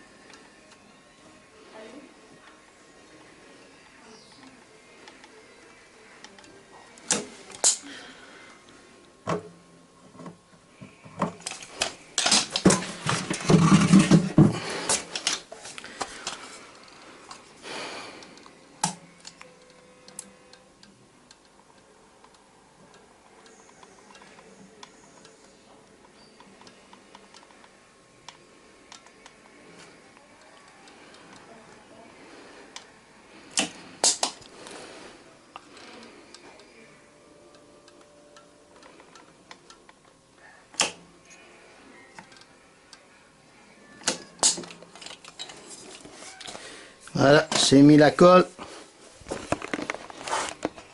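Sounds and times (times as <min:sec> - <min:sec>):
plastic parts clattering: 0:11.2 - 0:16.5, 0:44.4 - 0:46.0, 0:49.3 - 0:50.9
sharp clicks: 0:40.7 - 0:41.0.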